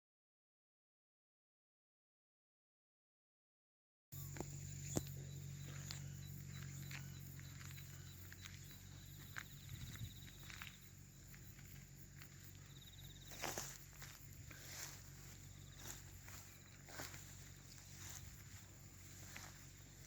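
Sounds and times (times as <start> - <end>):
fast high insect trill: 4.2 - 20.0
footsteps outdoors: 4.2 - 20.0
low steady hum: 4.2 - 20.0.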